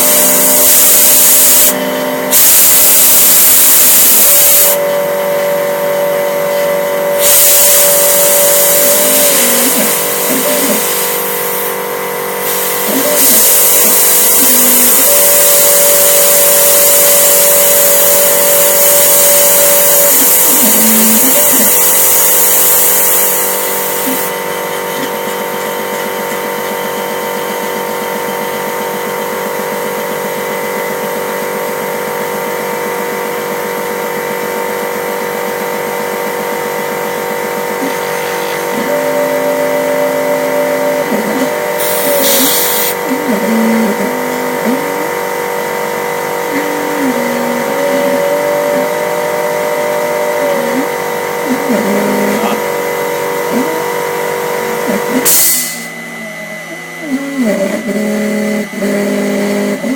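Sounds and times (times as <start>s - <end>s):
milling machine motor whine: 0.0s - 59.9s
motor tones shifting in pitch: 0.0s - 59.9s
loud hiss: 7.1s - 11.8s, 41.0s - 43.4s.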